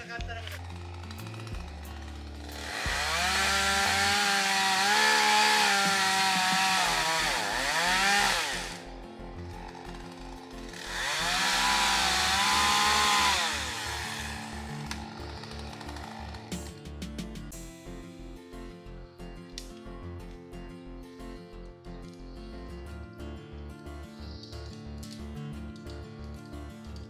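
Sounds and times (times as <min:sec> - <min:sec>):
chainsaw cutting: 0:00.0 - 0:17.0.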